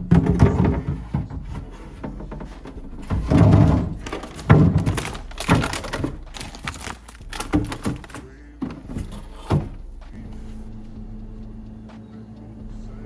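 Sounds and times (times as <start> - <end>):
refrigerator contents thunking: 0.0 - 10.6.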